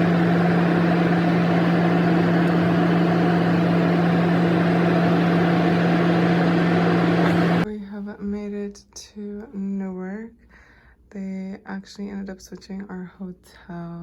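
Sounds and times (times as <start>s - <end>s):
jet airliner cabin noise: 0.0s - 7.6s.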